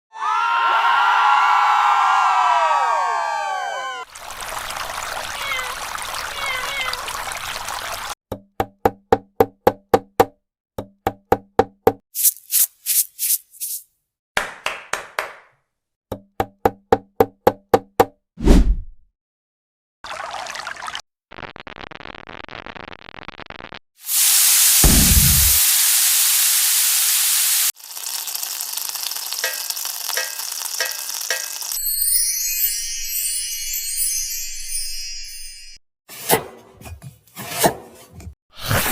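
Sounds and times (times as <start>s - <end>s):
thin high patterned sound: 12.2s - 13.9s
watery hissing: 24.0s - 27.8s
food sizzling in a pan: 24.0s - 31.8s.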